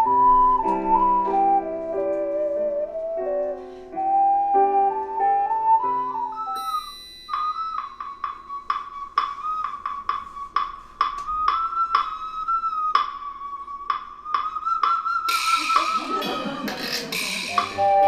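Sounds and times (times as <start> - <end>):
high bell-like ring: 6.6 - 8.6.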